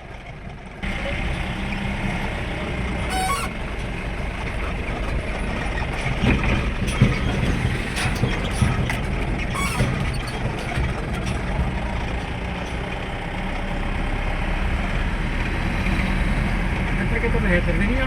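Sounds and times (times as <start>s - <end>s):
vehicle engine and road noise: 0.0s - 18.0s
brief high tone: 3.1s - 3.6s.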